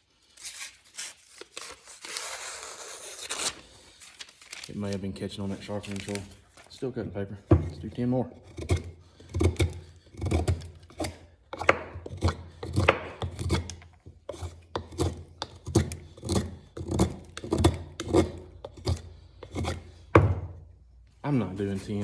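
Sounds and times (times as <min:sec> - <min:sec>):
knife scraping wood: 0:07.6 - 0:20.2.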